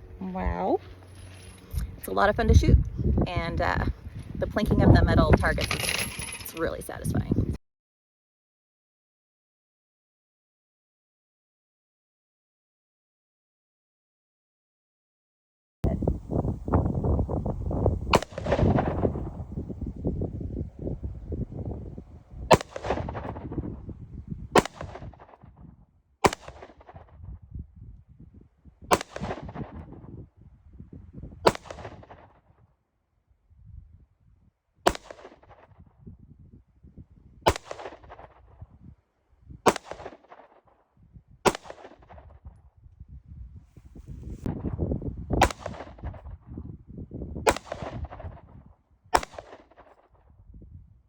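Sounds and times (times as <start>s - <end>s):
wind rumble on microphone: 0.0s - 7.6s, 15.8s - 32.7s, 33.3s - 40.1s, 41.0s - 51.0s
gunshots with echo: 18.1s - 19.4s, 22.5s - 23.6s, 24.5s - 25.4s, 26.2s - 27.0s, 28.9s - 29.8s, 31.4s - 32.2s, 34.9s - 35.6s, 37.5s - 38.4s, 39.7s - 40.4s, 41.5s - 42.1s, 45.4s - 46.0s, 47.5s - 48.2s, 49.2s - 49.7s.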